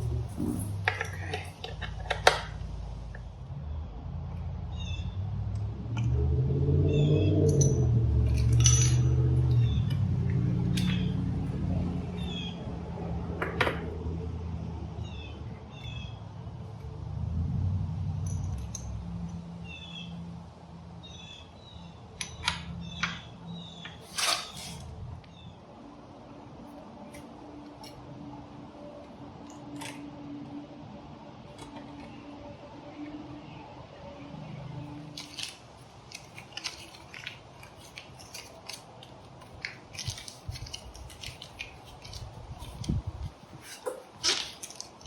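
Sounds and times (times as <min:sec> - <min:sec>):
metallic clicks and clinks: 0:07.5 - 0:09.7, 0:18.2 - 0:19.4.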